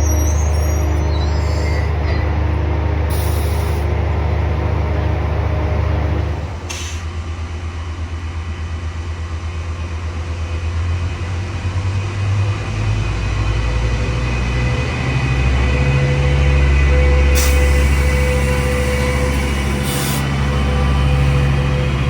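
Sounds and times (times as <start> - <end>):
diesel train engine droning: 0.0 - 22.0.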